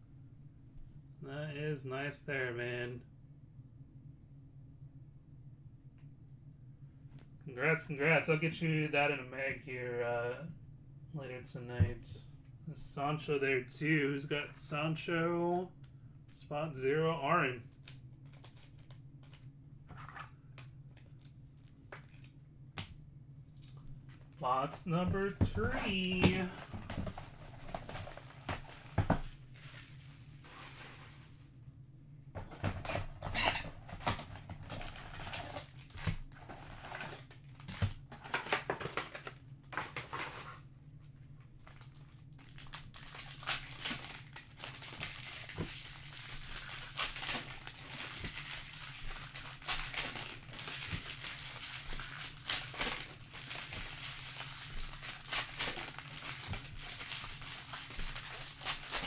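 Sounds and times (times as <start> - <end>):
plastic wrapping crinkling and tearing: 17.8 - 20.2, 25.0 - 31.4, 32.6 - 40.4, 41.6 - 59.0.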